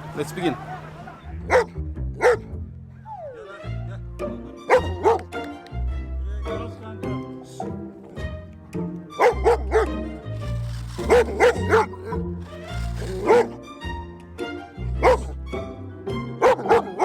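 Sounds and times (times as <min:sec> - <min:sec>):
background music with bass line: 0:01.2 - 0:17.0
dog barking: 0:01.4 - 0:02.5, 0:04.7 - 0:05.3, 0:09.2 - 0:10.0, 0:10.7 - 0:13.6, 0:15.0 - 0:15.4, 0:16.4 - 0:17.0.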